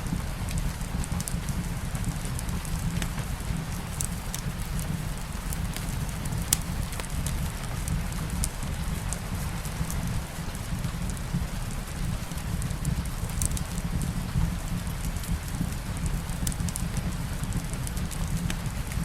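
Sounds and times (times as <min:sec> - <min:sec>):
soft rain: 0:00.0 - 0:19.0
wood fire crackling and popping: 0:00.4 - 0:19.0.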